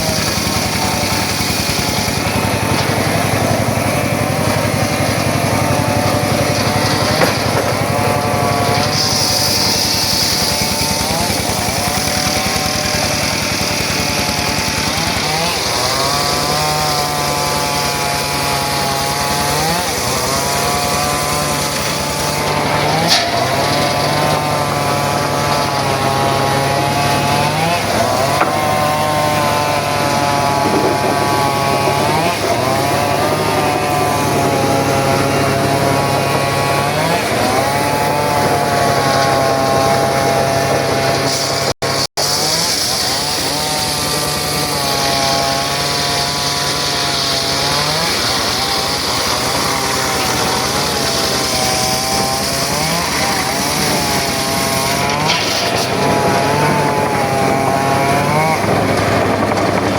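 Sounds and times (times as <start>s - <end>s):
circular saw whine: 0.0s - 59.9s.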